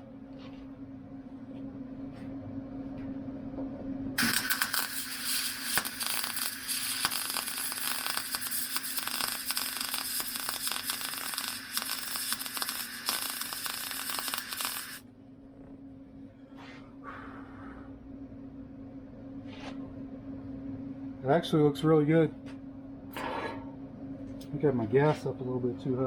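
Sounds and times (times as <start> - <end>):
welding arc crackling: 4.2 - 15.0.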